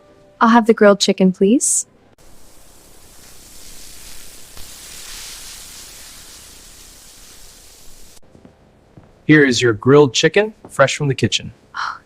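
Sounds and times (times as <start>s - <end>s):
chicken sizzling on a grill: 2.2s - 8.2s.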